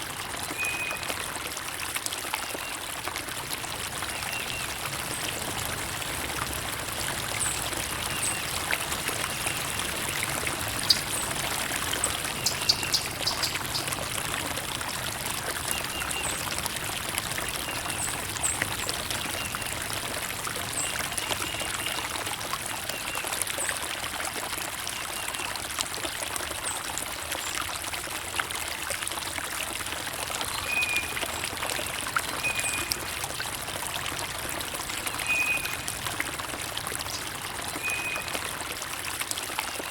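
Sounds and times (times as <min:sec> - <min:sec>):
water trickling: 0:00.0 - 0:39.9
bird chirps: 0:12.3 - 0:13.9.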